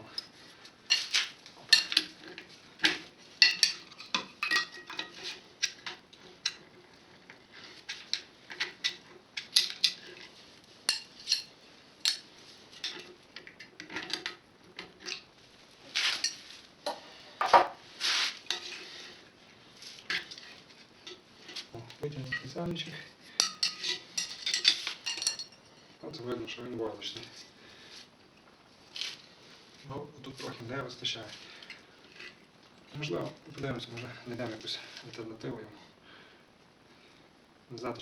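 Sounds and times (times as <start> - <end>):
metal tools clinking and scraping: 0.0 - 6.8, 7.8 - 15.3, 15.9 - 16.6, 17.4 - 19.1, 20.0 - 26.3.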